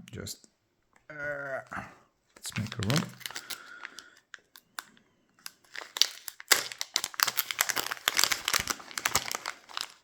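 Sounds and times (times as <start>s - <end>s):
packaging crinkling: 2.4s - 10.0s.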